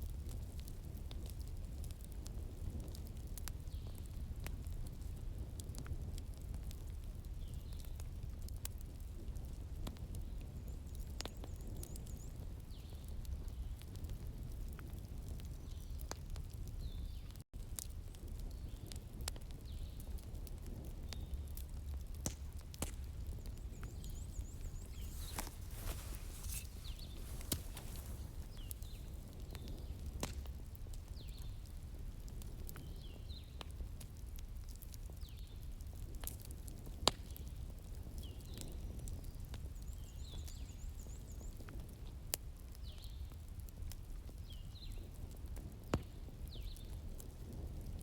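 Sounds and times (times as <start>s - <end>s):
wood fire crackling: 0.0s - 39.9s
sharp pops of fire: 21.1s - 31.4s.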